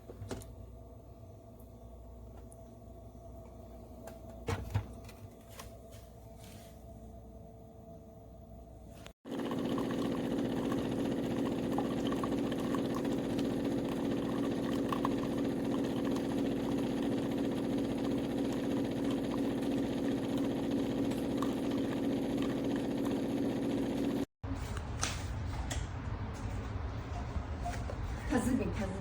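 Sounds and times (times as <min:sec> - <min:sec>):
coffee maker humming: 0:09.0 - 0:24.3.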